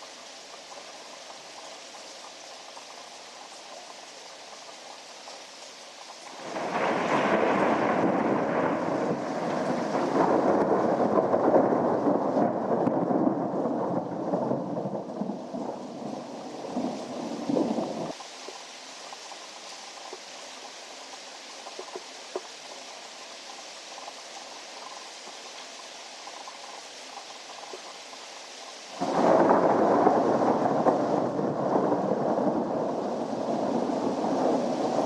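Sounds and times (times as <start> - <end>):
rain hissing: 0.0 - 35.0
thunder rumbling: 6.4 - 18.2, 29.0 - 35.0.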